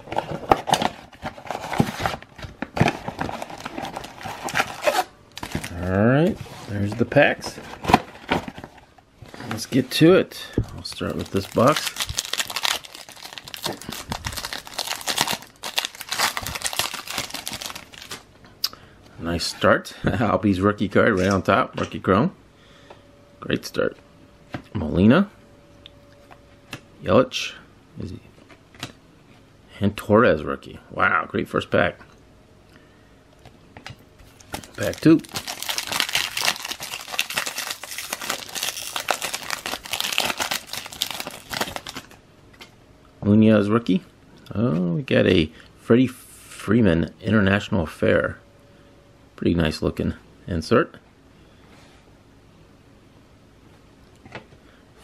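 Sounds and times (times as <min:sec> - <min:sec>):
foil wrapper crinkling and tearing: 0:10.8 - 0:18.2, 0:34.3 - 0:42.2.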